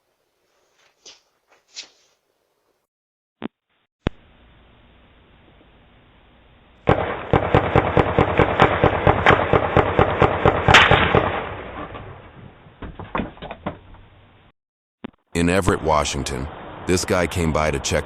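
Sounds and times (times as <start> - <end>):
firecrackers cracking: 6.9 - 12.5.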